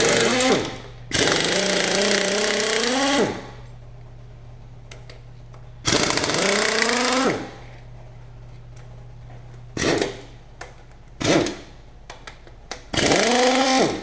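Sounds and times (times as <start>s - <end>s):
air tool whining: 0.0s - 3.6s, 5.8s - 7.7s, 11.2s - 11.8s, 12.9s - 14.0s
low hum: 0.0s - 13.2s.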